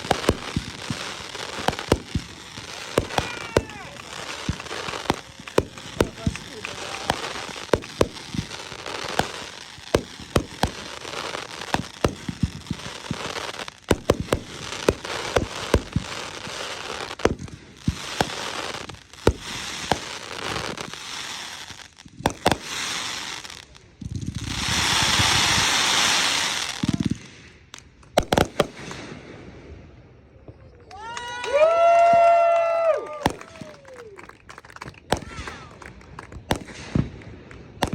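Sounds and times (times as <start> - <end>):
loud steady hiss: 0.0 - 29.8
fireworks bangs: 0.0 - 37.9
fireworks crackling: 0.0 - 37.9.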